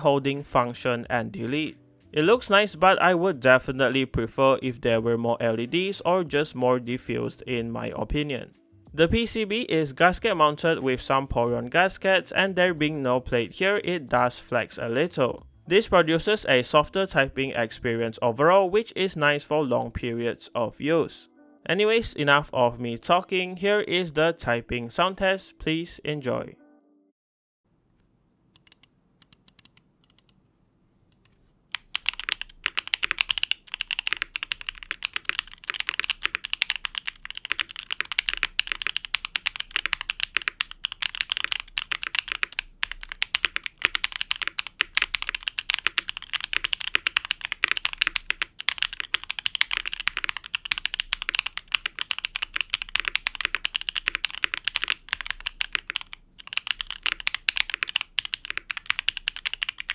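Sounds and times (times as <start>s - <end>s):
mechanical keyboard typing: 28.6s - 30.4s, 31.2s - 59.9s.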